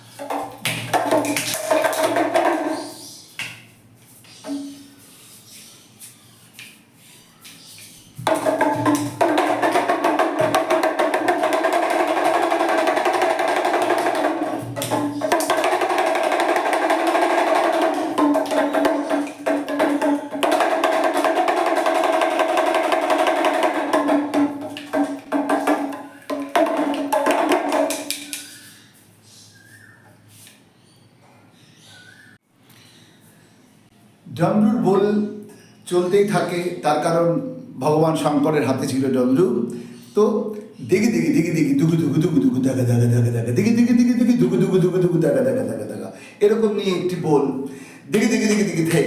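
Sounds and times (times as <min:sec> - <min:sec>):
hand drum rattling rolls: 0:08.2 - 0:28.3.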